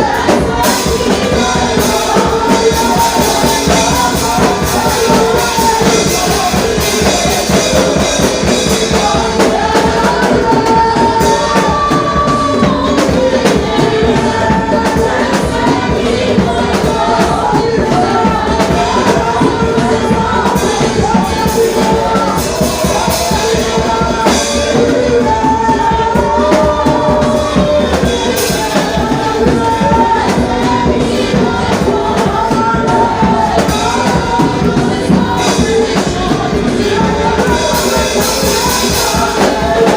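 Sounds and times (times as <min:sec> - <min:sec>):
band with drums: 0:00.0 - 0:39.9
voices singing worship music: 0:00.0 - 0:39.9.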